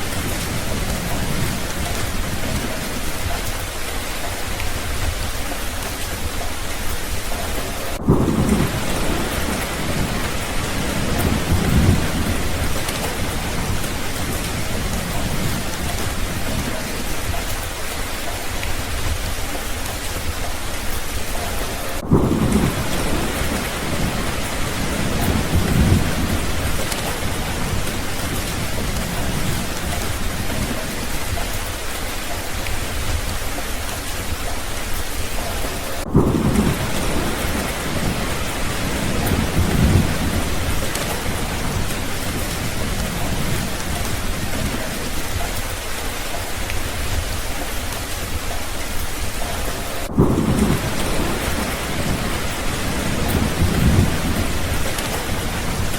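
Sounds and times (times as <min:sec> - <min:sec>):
heavy rain falling: 0:00.0 - 0:55.9
low rolls of thunder: 0:00.0 - 0:55.9.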